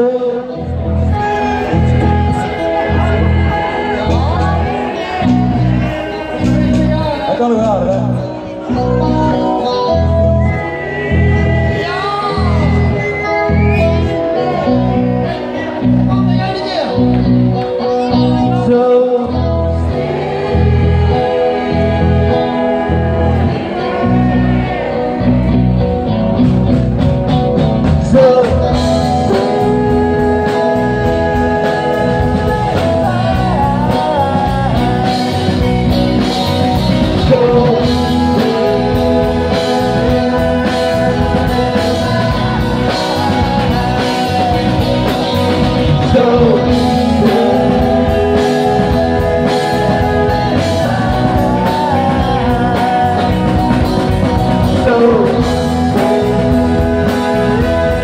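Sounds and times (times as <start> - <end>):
person singing: 0.0 - 16.9, 17.6 - 25.9, 27.9 - 58.0
guitar: 0.0 - 58.0
steady drum beat: 26.4 - 58.0.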